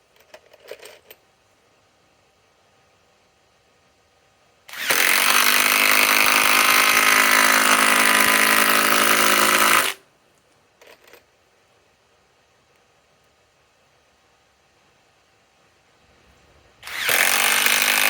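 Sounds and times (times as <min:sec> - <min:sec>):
cordless impact driver running: 0:04.7 - 0:10.0, 0:16.8 - 0:18.0.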